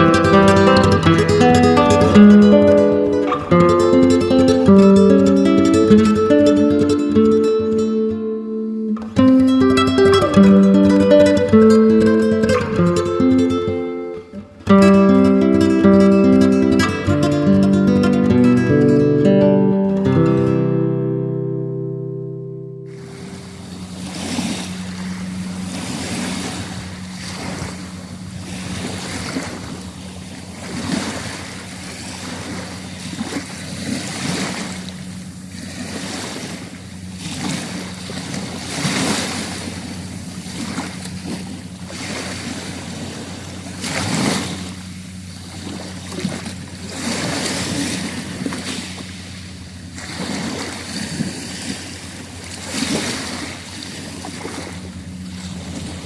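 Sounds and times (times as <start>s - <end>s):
waves breaking on shore: 0.0s - 20.6s, 22.5s - 56.0s
steady low hum: 34.6s - 56.0s.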